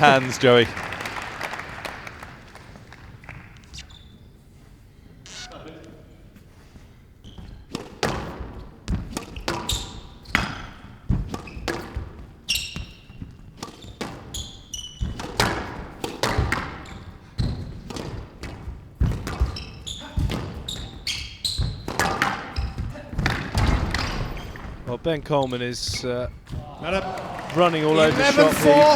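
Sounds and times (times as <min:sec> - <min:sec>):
shoes squeaking on court floor: 0:01.9 - 0:28.9
squash ball cracking off rackets: 0:07.4 - 0:24.9.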